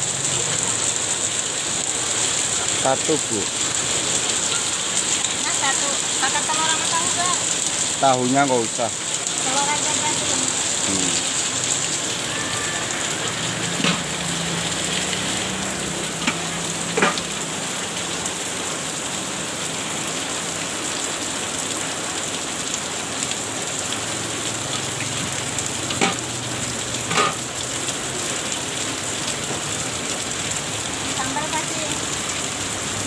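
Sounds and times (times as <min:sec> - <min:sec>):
rain hissing: 0:00.0 - 0:33.0
egg frying in hot oil: 0:24.6 - 0:28.1
sharp utensil knocks: 0:26.0 - 0:26.2.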